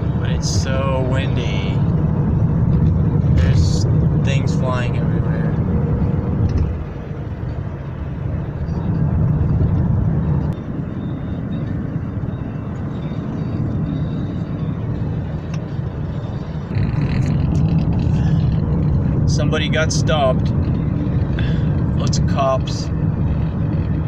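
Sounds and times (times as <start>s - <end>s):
road and wind noise: 0.0s - 24.0s.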